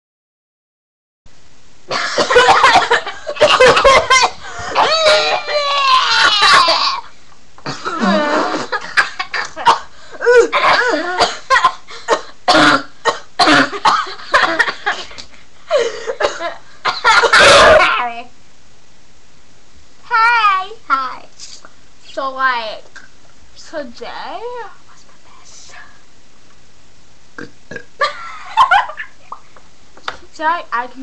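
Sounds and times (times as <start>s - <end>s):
girls laughing: 1.9s - 7.1s, 7.9s - 9.7s, 28.0s - 29.5s
girls coughing: 1.9s - 18.0s.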